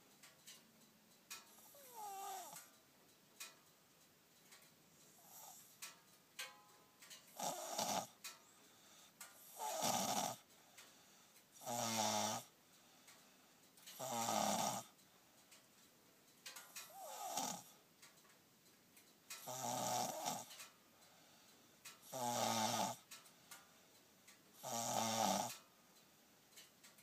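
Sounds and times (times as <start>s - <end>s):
person snoring: 1.6s - 2.6s, 5.2s - 5.7s, 7.4s - 8.2s, 9.4s - 10.4s, 11.6s - 12.5s, 13.9s - 14.9s, 16.9s - 17.7s, 19.4s - 20.5s, 22.0s - 23.1s, 24.6s - 25.6s.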